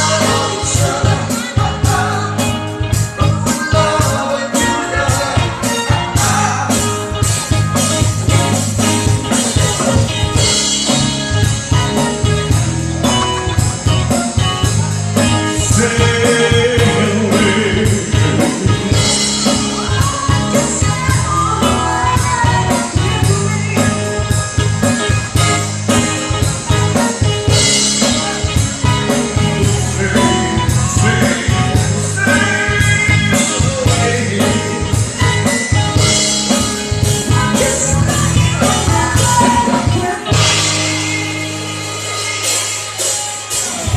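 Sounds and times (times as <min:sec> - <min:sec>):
person singing: 0:00.0 - 0:07.6, 0:11.7 - 0:42.7
bass and guitar: 0:00.0 - 0:43.9
drum kit beat: 0:00.0 - 0:43.9.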